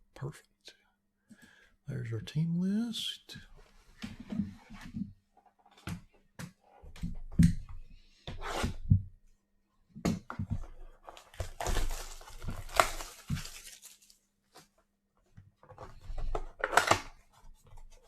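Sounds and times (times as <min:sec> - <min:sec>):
wrapping tearing and crinkling: 0:11.1 - 0:14.3.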